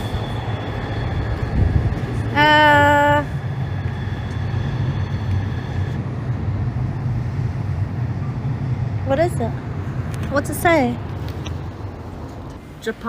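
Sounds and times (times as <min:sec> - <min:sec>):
loud held pitched tone: 0:00.0 - 0:09.5
traffic rumble: 0:00.0 - 0:13.0.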